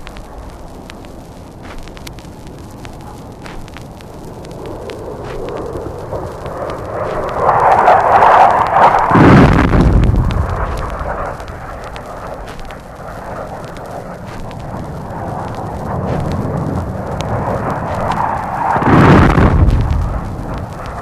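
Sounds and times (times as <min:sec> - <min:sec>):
jet roar: 0:00.0 - 0:21.0
vinyl surface crackle and pops: 0:00.0 - 0:21.0
bomb blast: 0:04.7 - 0:13.8, 0:14.4 - 0:21.0.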